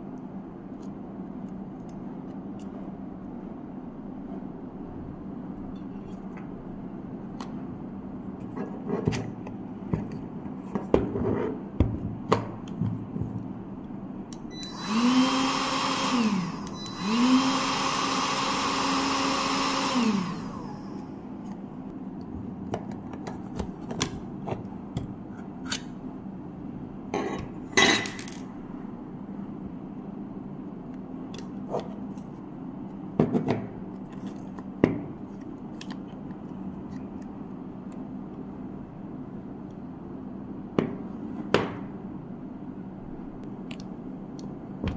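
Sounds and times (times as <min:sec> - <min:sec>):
hot air gun blower whine: 0:14.5 - 0:21.2.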